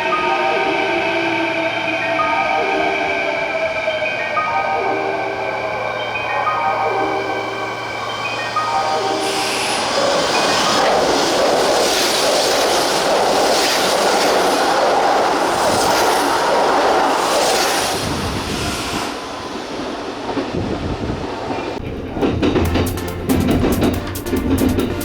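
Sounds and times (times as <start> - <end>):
train wheel and rail rush: 0.0 - 25.0
wheels clattering over rail joints: 21.6 - 25.0.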